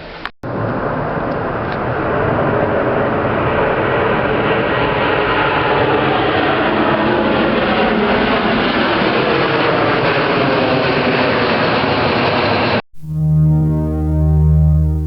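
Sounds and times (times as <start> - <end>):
held low musical note: 13.0 - 15.0.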